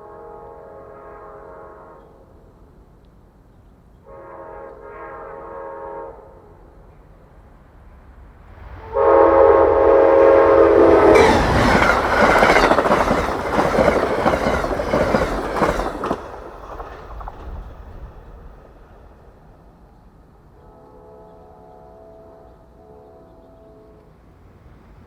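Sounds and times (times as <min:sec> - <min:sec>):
train air horn: 0:00.0 - 0:02.4, 0:04.0 - 0:06.7, 0:08.7 - 0:12.6, 0:20.6 - 0:24.2
train rushing past: 0:04.2 - 0:22.2.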